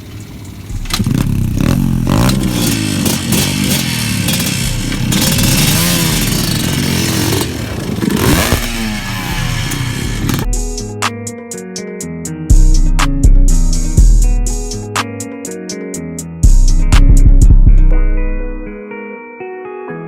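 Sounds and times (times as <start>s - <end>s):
mechanical clatter: 0.0s - 10.5s
small engine revving: 0.0s - 10.6s.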